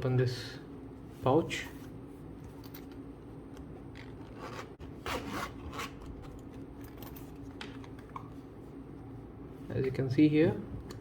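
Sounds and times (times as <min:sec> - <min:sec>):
leather pouch rubbing and scraping: 0:04.3 - 0:06.1.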